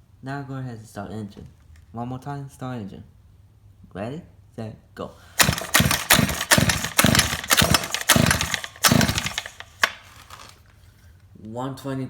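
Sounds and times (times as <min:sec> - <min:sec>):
pull-starter cranking small engine: 0:05.4 - 0:10.6.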